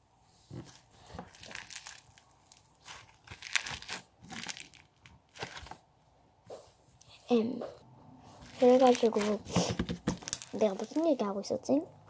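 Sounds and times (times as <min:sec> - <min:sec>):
crinkling and rustling: 0:00.4 - 0:05.9, 0:08.3 - 0:11.5.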